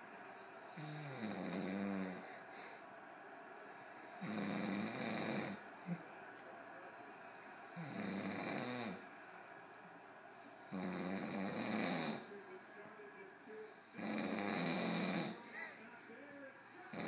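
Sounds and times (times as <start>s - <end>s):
man snoring: 0.7s - 2.2s, 4.2s - 5.6s, 7.8s - 9.0s, 10.7s - 12.3s, 13.9s - 15.4s.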